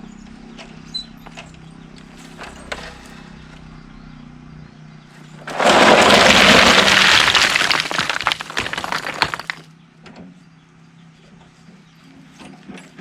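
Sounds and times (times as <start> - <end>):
rock crashing and cracking: 5.4 - 9.7.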